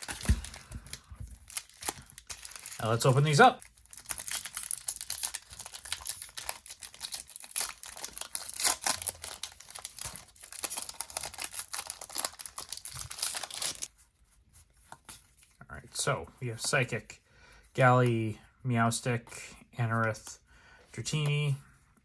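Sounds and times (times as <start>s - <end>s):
wrapper being torn and crinkled: 0.0s - 13.9s.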